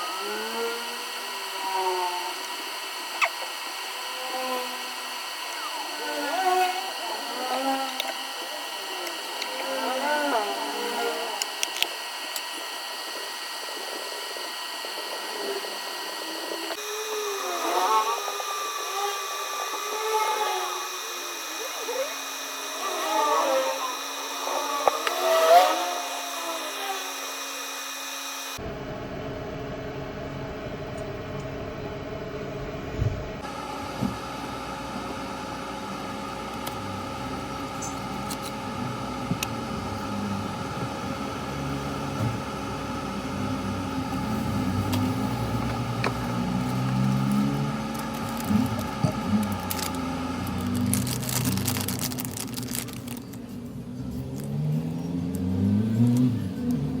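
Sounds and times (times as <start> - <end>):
faint wavering tones: 0.0 - 57.0
hot air gun blowing: 33.4 - 53.5.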